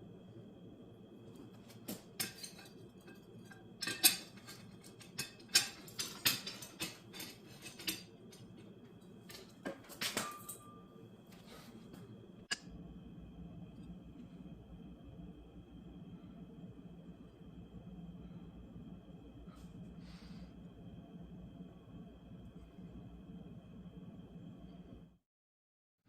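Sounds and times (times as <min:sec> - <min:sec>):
metal objects clinking on a bench: 0:01.7 - 0:08.7, 0:09.3 - 0:10.9.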